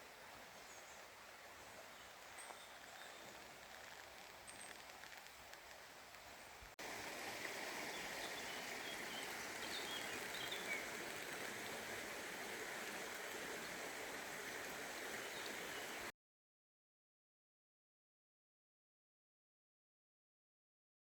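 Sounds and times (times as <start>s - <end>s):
running water rushing: 0.0s - 16.1s.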